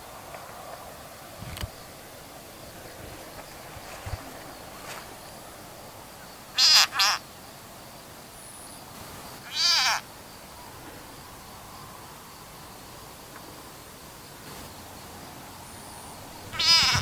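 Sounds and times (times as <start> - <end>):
high-pitched animal calls: 6.5 - 7.2, 9.4 - 10.1, 16.5 - 17.0.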